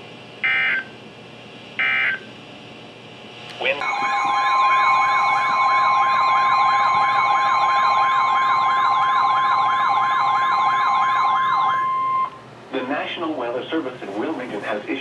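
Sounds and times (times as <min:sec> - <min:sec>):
steady high tone: 0:03.6 - 0:13.0
warbling siren tone: 0:03.8 - 0:12.4.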